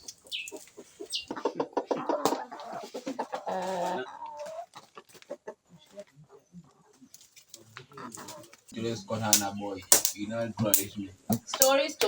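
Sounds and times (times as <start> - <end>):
chickens clucking and squawking: 0.0 - 8.8.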